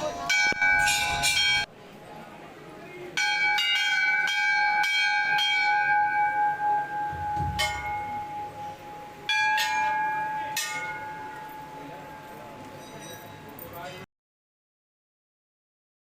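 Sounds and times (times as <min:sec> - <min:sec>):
temple bell ringing: 0:00.0 - 0:01.7, 0:03.1 - 0:13.8.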